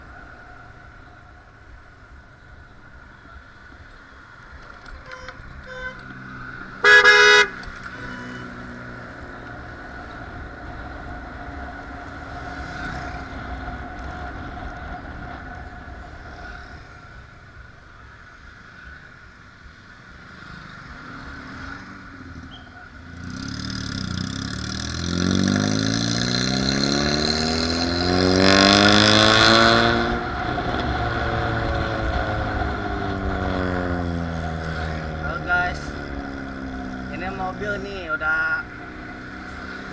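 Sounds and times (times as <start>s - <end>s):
engine and road noise: 0.0s - 39.9s
vehicle horn honking: 5.0s - 8.9s
vehicle engine rising in pitch: 5.1s - 9.2s, 23.2s - 39.9s.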